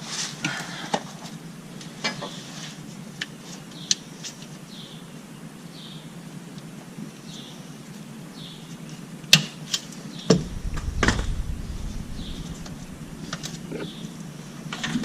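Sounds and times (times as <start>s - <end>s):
low rumble: 10.3s - 14.3s.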